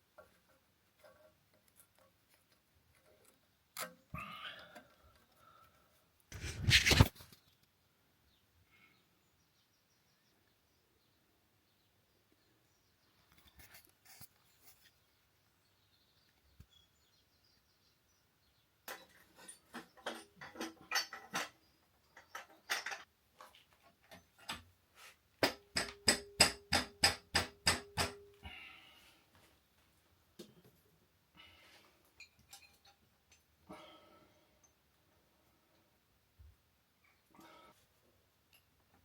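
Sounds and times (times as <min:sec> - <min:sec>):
metal tools clattering: 0:18.9 - 0:21.6, 0:32.2 - 0:33.5.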